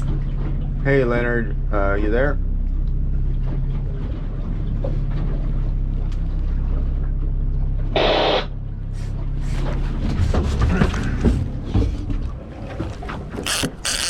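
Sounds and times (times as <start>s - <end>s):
outboard motor running: 0.0s - 8.0s, 8.6s - 14.0s.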